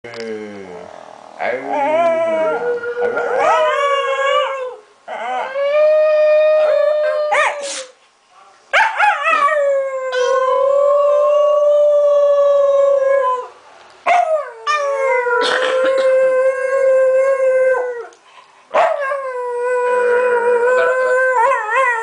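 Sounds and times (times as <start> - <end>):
small dog howling: 9.0 - 13.4.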